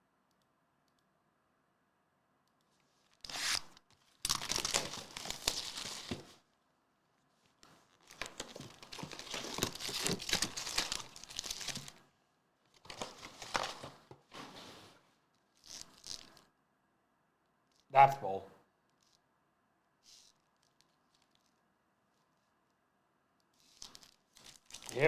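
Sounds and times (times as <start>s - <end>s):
plastic packaging crinkling: 3.4s - 6.4s, 7.9s - 12.0s, 12.8s - 14.3s, 23.8s - 25.0s.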